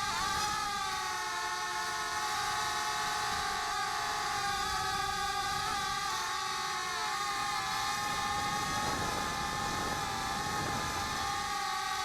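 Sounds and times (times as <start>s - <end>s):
drone propellers whining: 0.0s - 12.0s.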